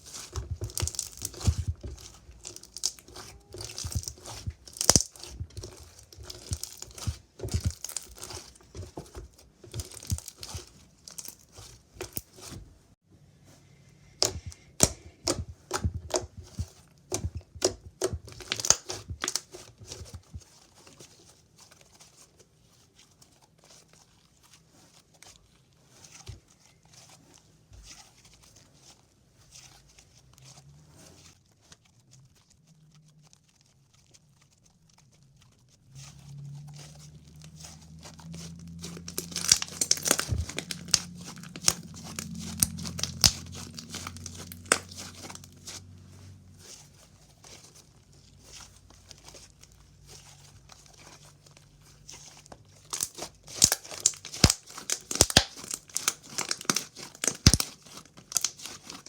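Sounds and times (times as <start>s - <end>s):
slime squishing and popping: 0.0s - 12.6s, 14.2s - 20.6s, 36.6s - 47.8s, 48.4s - 59.0s.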